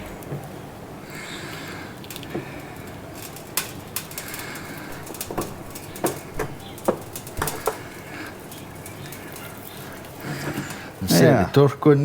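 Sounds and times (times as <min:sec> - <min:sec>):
sharp clicks and knocks: 0:02.0 - 0:09.5.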